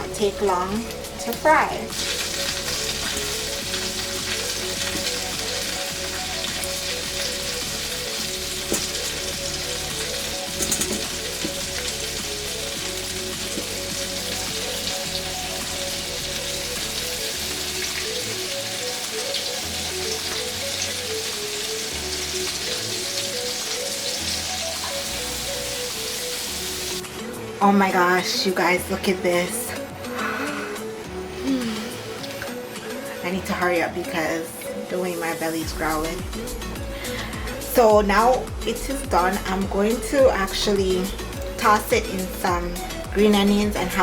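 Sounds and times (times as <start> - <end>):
shrimp sizzling in hot oil: 0.0 - 27.0
background music: 0.0 - 44.0.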